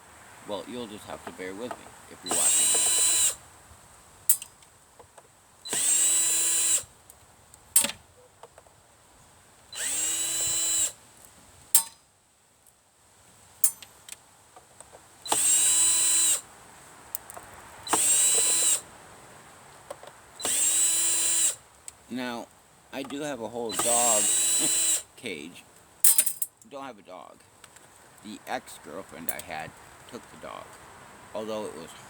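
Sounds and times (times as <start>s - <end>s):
power drill whining: 2.3s - 3.4s, 5.7s - 6.9s, 9.7s - 11.0s, 15.2s - 16.4s, 17.8s - 18.8s, 20.4s - 21.6s, 23.6s - 25.2s.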